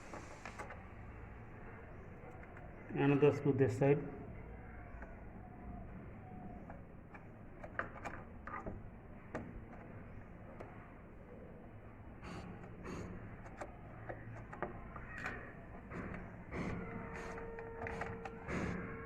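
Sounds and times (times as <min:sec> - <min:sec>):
screwdriver removing a screw: 0:12.3 - 0:18.8.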